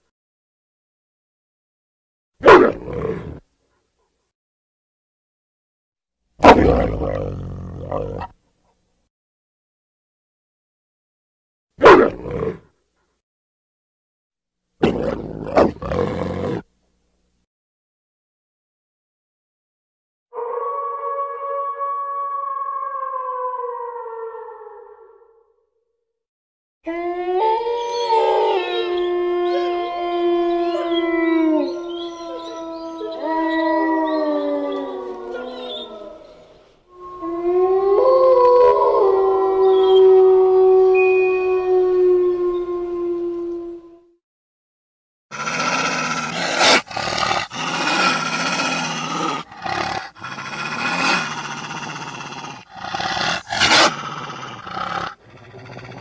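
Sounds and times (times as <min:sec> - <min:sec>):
wolves growling and snarling: 0:06.4 - 0:08.4, 0:14.8 - 0:16.7, 0:45.3 - 0:56.0
wolves howling in chorus: 0:26.9 - 0:44.0
wolf snaps or barks: 0:52.7 - 0:55.1.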